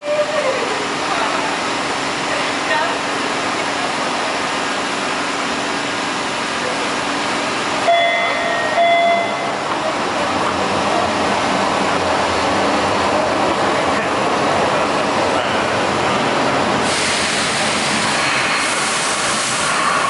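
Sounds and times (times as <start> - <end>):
subway train wheels rumbling on rail: 0.0 - 20.0
short tones: 7.8 - 9.6.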